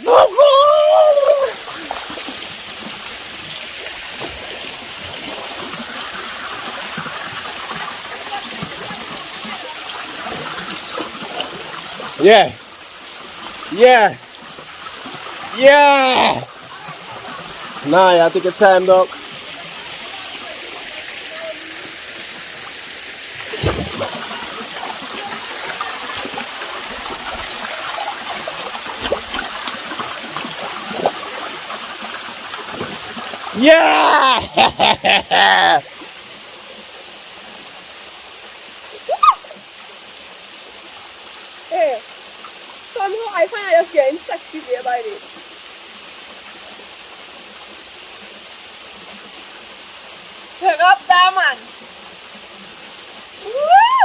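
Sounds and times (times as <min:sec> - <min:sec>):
waterfall rushing: 0:00.0 - 0:39.8.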